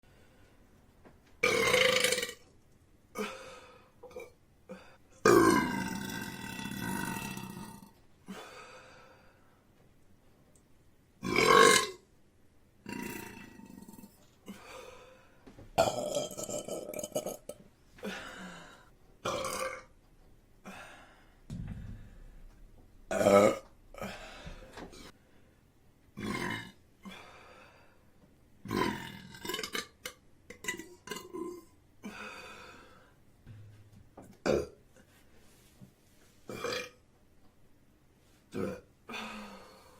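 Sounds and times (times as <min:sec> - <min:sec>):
woman burping: 0:01.4 - 0:02.4, 0:15.8 - 0:17.6, 0:19.2 - 0:19.9, 0:23.1 - 0:24.2, 0:36.5 - 0:37.0.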